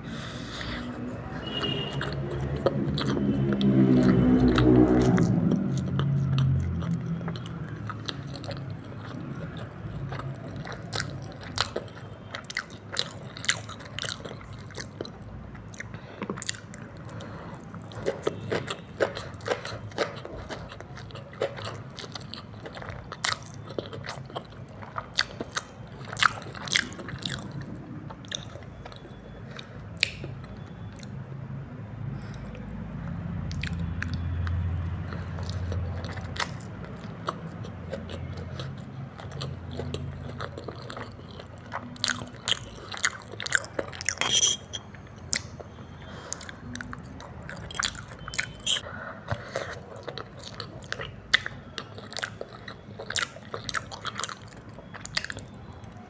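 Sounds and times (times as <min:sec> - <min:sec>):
person chewing noodles: 0:00.0 - 0:31.2, 0:32.2 - 0:56.0
wet mouth clicks: 0:44.1 - 0:45.5, 0:47.5 - 0:49.4.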